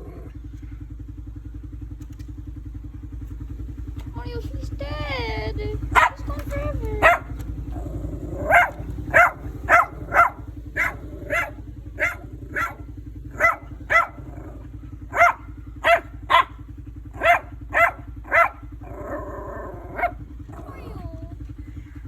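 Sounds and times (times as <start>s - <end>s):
steady low hum: 0.0s - 22.0s
dog barking: 5.8s - 21.3s.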